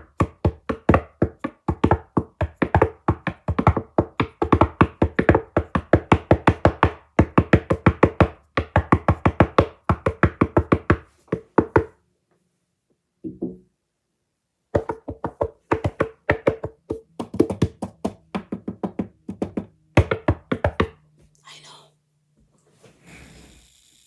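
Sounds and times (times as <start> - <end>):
knocking on a hard surface: 0.0 - 11.9, 13.2 - 13.6, 14.8 - 21.0.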